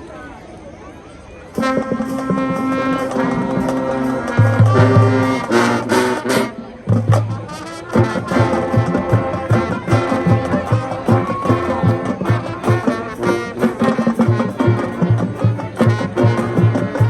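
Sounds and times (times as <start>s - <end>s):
marching band playing: 1.5s - 17.0s.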